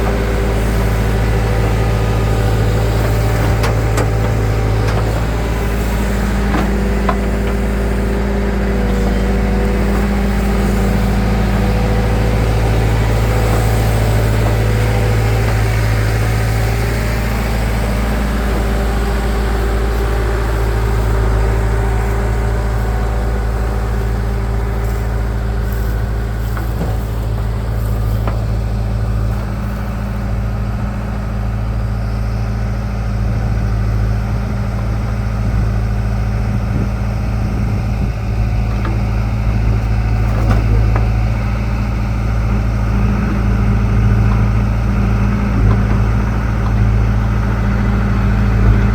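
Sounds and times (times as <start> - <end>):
diesel engines running steadily: 0.0 - 48.9.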